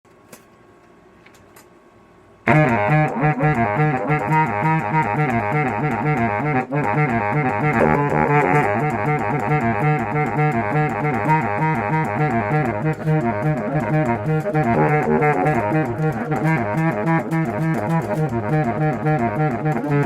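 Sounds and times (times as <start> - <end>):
saxophone melody: 2.5 - 20.0
repeating low bass line: 7.6 - 10.2, 10.9 - 19.3.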